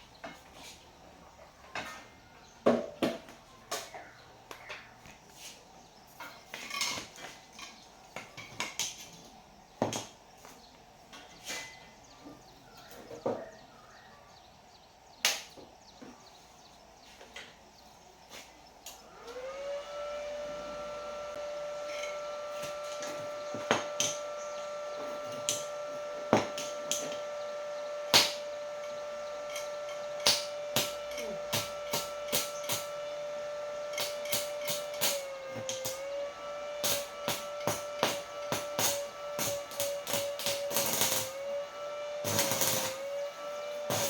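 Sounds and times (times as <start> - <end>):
machine whine: 18.9 - 44.0.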